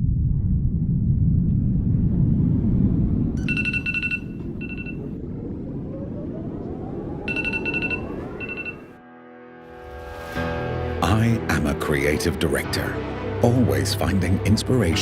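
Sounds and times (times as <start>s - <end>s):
low rumble: 0.0s - 9.0s
faint rising tone: 0.0s - 9.1s
electronic ringtone trilling: 3.4s - 5.2s, 7.3s - 9.0s.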